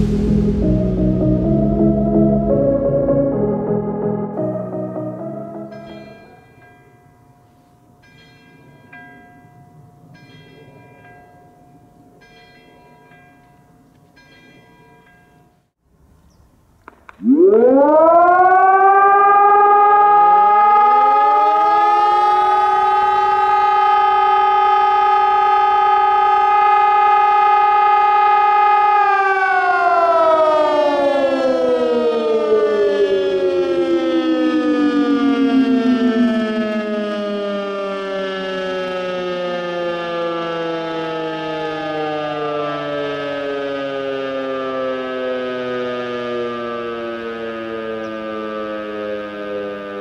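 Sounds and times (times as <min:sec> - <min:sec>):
motor siren winding down: 0:00.0 - 0:06.3, 0:17.2 - 0:50.0
electronic siren: 0:00.0 - 0:06.4, 0:17.1 - 0:50.0.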